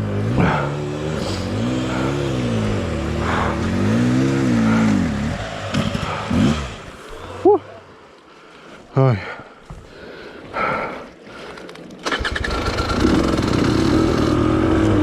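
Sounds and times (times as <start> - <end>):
motorcycle engine revving: 0.0 - 7.6, 12.0 - 15.0.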